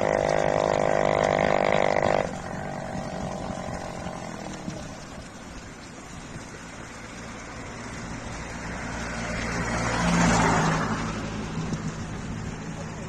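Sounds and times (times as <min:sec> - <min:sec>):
vehicle passing by: 0:00.0 - 0:13.0.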